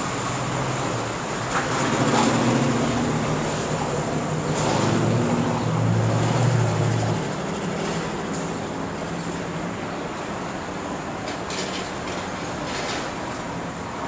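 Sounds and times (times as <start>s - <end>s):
engine roar: 0.0s - 10.5s.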